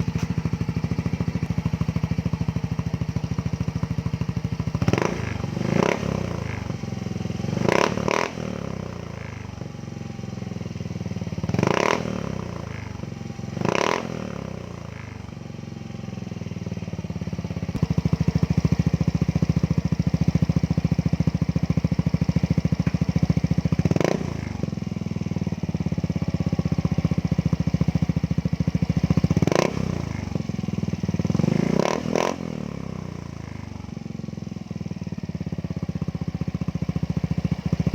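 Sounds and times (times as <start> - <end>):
scooter engine revving: 0.0 - 9.6, 11.1 - 14.7, 17.7 - 33.7.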